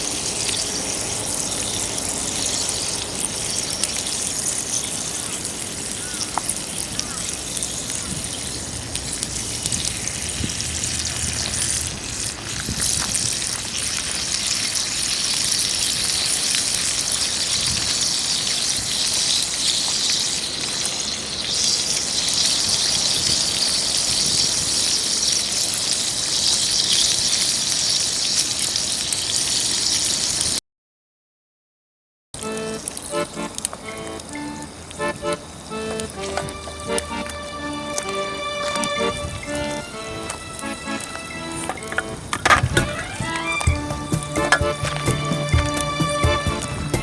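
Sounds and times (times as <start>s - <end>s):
food sizzling in a skillet: 0.0s - 30.6s.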